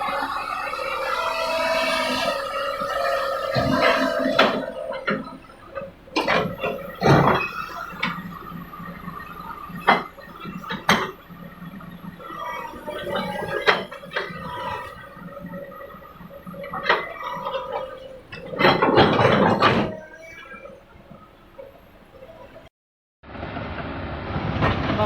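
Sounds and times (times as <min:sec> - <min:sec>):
sharp metallic knocks: 0:00.0 - 0:15.3
excavator whining: 0:00.0 - 0:22.7.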